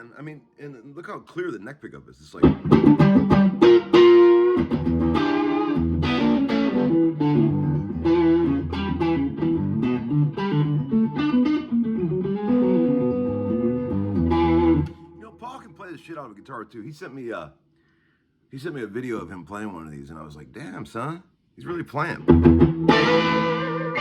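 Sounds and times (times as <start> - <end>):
electric guitar melody: 2.4 - 15.2, 22.2 - 24.0.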